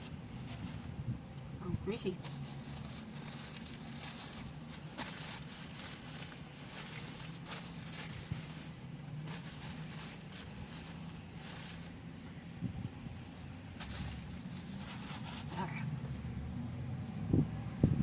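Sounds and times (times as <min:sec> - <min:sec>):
food packaging rustling: 0:00.0 - 0:01.0, 0:02.1 - 0:12.0, 0:13.7 - 0:16.2.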